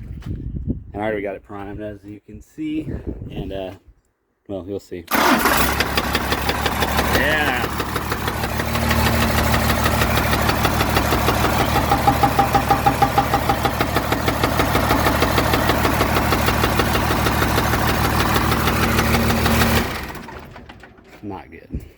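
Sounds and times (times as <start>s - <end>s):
diesel engine knocking: 5.1s - 21.0s
engine winding down: 5.1s - 21.2s.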